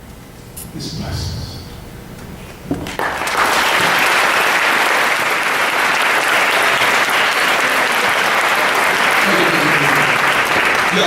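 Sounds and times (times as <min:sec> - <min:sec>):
audience clapping and cheering: 0:02.9 - 0:11.0.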